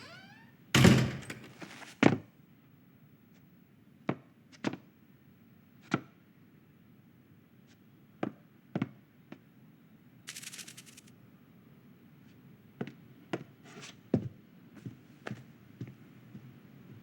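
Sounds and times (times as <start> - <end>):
fast rattle: 10.3 - 11.1.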